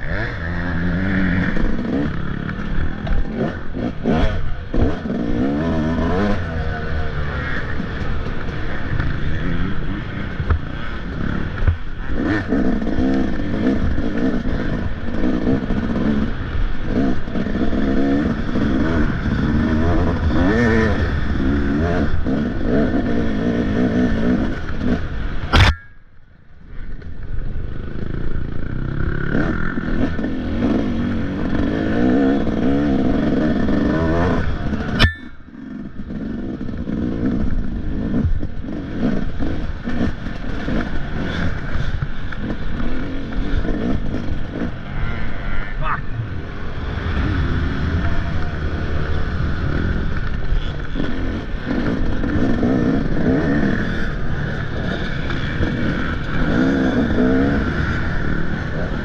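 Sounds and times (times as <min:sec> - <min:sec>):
dirt bike engine revving: 0:00.0 - 0:26.0, 0:27.7 - 0:59.0
sharp knock: 0:25.5 - 0:26.0.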